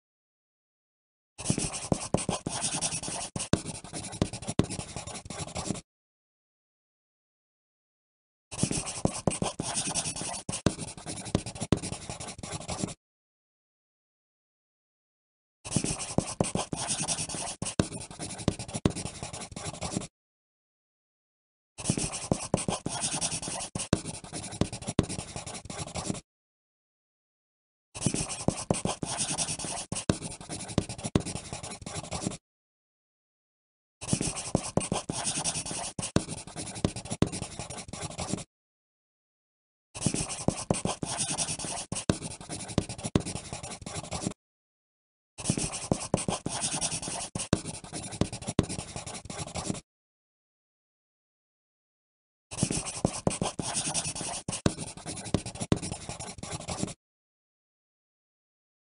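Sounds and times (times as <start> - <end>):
pencil writing on paper: 1.4 - 5.8, 8.5 - 13.0, 15.7 - 20.1, 21.8 - 26.2, 28.0 - 32.4, 34.0 - 38.5, 40.0 - 44.4, 45.4 - 49.8, 52.5 - 57.0.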